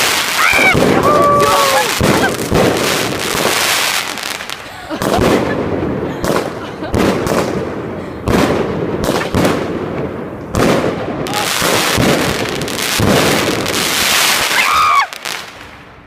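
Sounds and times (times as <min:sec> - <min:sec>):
fireworks bangs: 0:00.0 - 0:16.0
fireworks crackling: 0:00.0 - 0:16.0.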